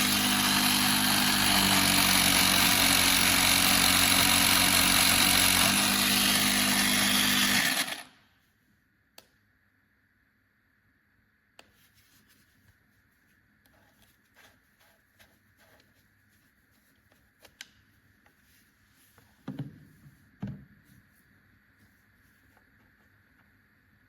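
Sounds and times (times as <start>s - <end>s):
faint steady hum: 8.1s - 24.0s.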